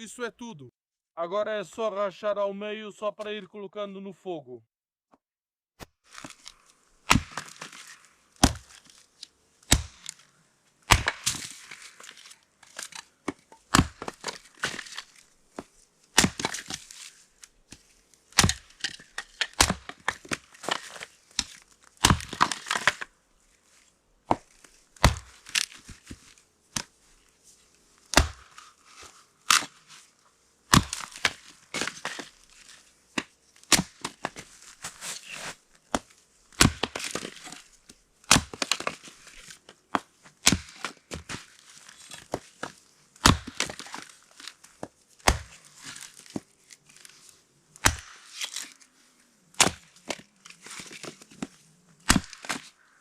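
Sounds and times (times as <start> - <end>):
firewood splitting: 6.0 - 48.9, 49.5 - 52.8.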